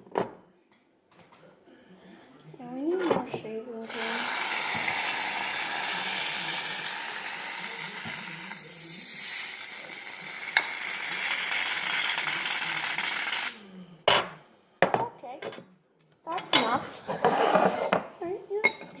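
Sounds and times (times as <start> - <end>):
aerosol can spraying foam: 3.9 - 13.5.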